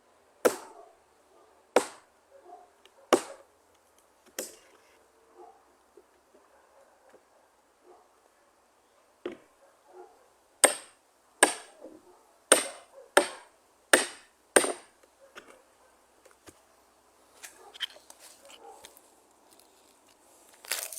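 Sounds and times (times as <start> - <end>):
axe chopping wood: 0.4 - 0.8, 1.8 - 2.1, 3.1 - 3.4, 4.3 - 4.6, 10.6 - 11.8, 12.5 - 15.0.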